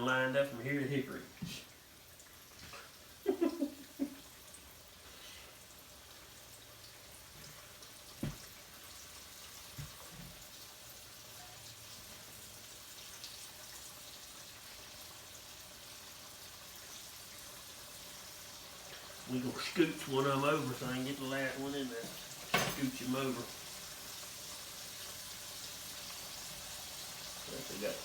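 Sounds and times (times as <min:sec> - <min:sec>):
chicken sizzling in a skillet: 0:00.0 - 0:28.0.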